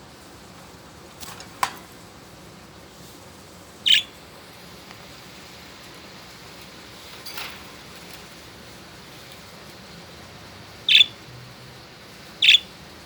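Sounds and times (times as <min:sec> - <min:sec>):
budgerigar chirp: 0:03.8 - 0:04.1, 0:10.8 - 0:11.2, 0:12.4 - 0:12.8.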